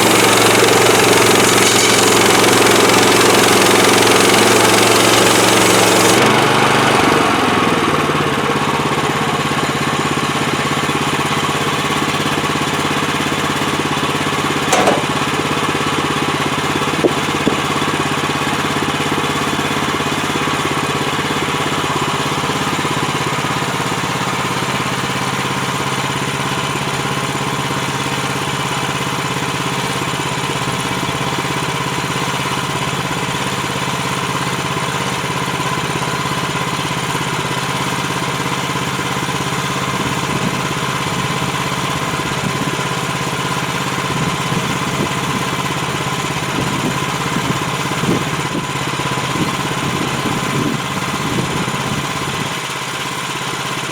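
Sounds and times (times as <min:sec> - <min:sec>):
sawmill gasoline engine running: 0:00.0 - 0:53.9
rough rattling: 0:14.6 - 0:15.9.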